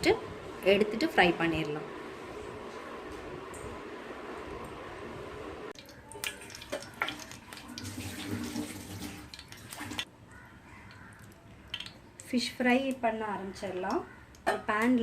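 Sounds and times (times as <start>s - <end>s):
kitchen tap running: 5.8s - 10.0s.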